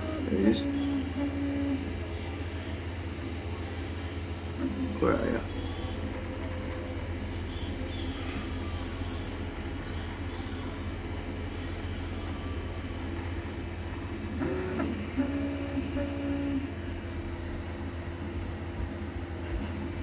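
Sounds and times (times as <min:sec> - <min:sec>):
printer fans and motors humming: 0:00.0 - 0:20.0.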